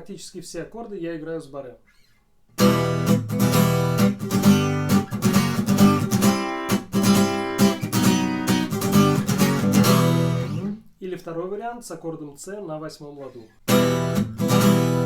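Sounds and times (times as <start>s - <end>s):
acoustic guitar strumming: 2.6s - 10.8s, 13.7s - 15.0s.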